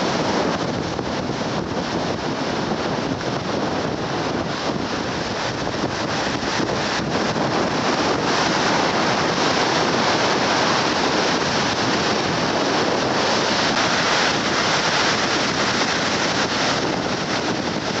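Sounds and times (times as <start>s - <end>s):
sea surf breaking: 0.0s - 18.0s
wind buffeting microphone: 0.0s - 18.0s.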